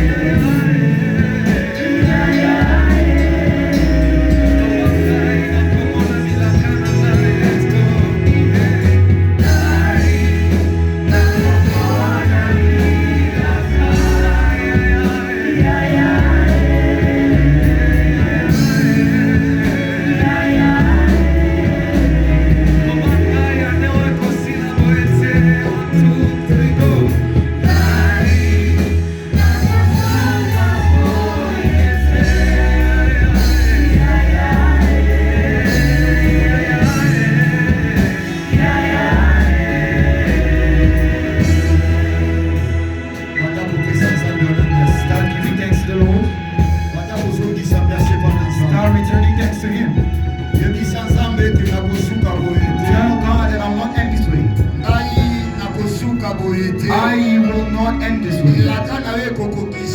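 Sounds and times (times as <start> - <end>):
singing: 0.0 - 46.3
band with heavy bass: 0.0 - 59.9.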